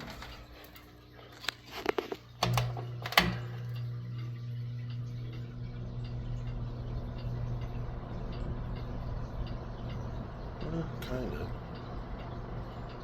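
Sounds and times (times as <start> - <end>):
fan motor hum with ticking: 0.0 - 13.0
fan switch click: 2.4 - 3.8.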